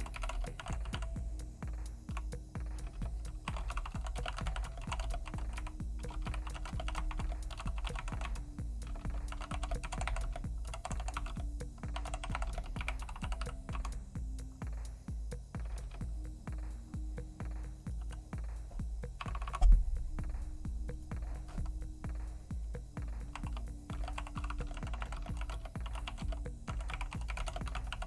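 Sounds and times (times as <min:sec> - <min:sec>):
typing on mechanical keyboard: 0:00.0 - 0:01.2, 0:02.8 - 0:13.9, 0:19.2 - 0:19.7, 0:23.3 - 0:28.0.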